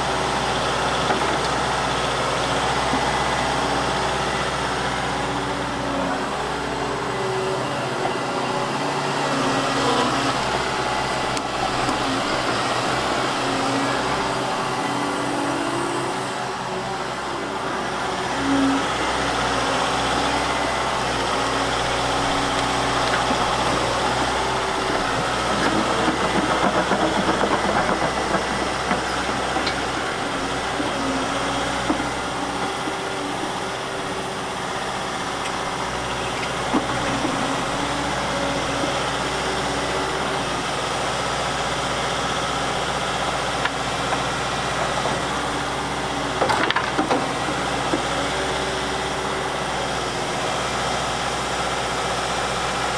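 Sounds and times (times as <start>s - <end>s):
excavator diesel engine running: 0.0s - 52.9s.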